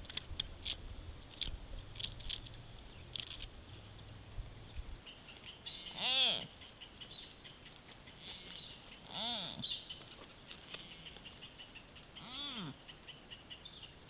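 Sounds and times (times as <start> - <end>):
deer calling: 5.4 - 10.0, 10.7 - 13.5.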